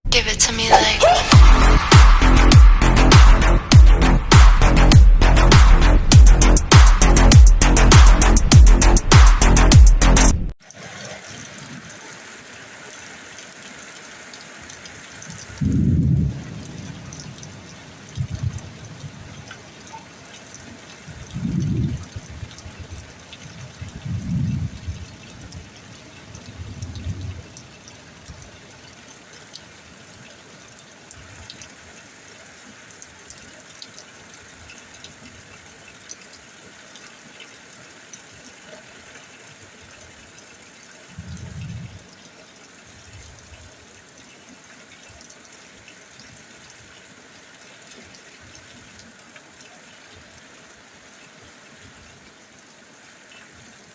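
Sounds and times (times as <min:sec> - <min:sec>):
steady rain hiss: 0:10.6 - 0:53.9
trickle of running water: 0:10.6 - 0:53.9
dripping water ticks: 0:12.4 - 0:15.7, 0:16.3 - 0:53.9.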